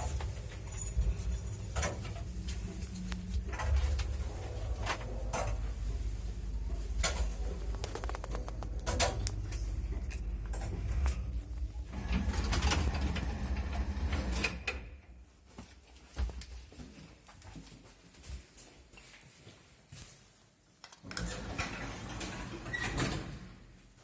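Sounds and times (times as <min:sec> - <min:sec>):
lift hum and rumble: 0:00.0 - 0:15.3.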